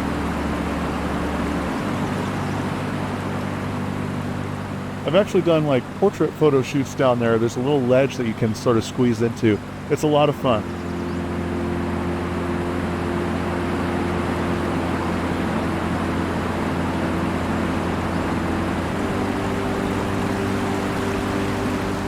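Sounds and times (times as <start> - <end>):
waterfall rushing: 0.0 - 10.6, 13.5 - 22.0
drone propellers humming: 0.0 - 22.0.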